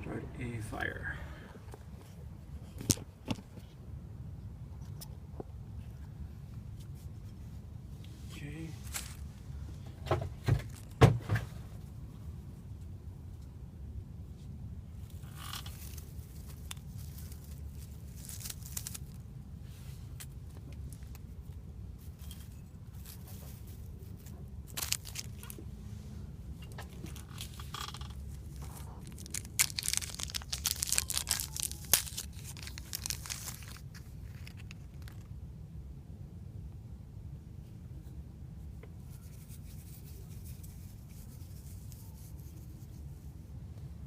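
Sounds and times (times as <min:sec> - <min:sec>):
hands tearing and crinkling tinder: 0:15.0 - 0:19.3, 0:20.1 - 0:25.7, 0:26.8 - 0:35.3.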